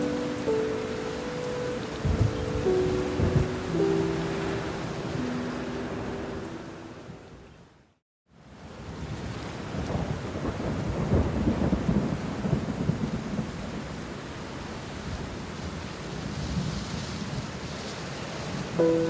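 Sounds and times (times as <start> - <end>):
steady rain: 0.0 - 19.0
rolling thunder: 2.0 - 4.0, 9.7 - 13.9.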